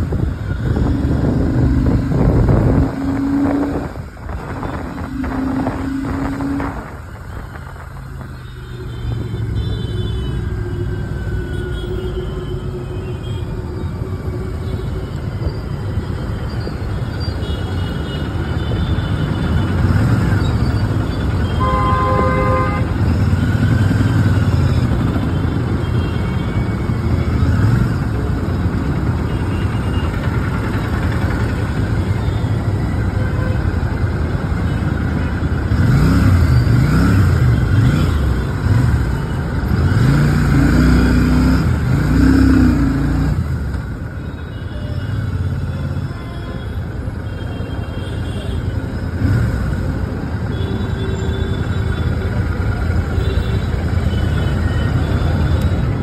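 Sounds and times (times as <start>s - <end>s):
vehicle horn: 21.4s - 23.0s.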